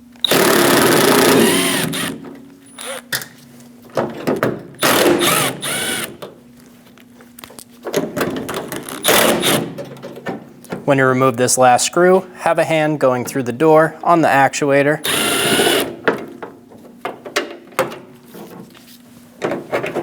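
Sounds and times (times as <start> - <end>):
cordless drill motor: 0.2 - 3.1, 4.8 - 6.2, 15.0 - 15.9.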